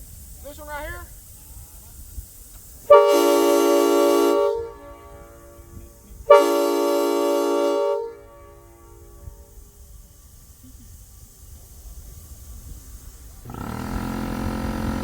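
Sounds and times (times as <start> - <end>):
train horn blasts: 2.9 - 9.8, 13.5 - 14.9.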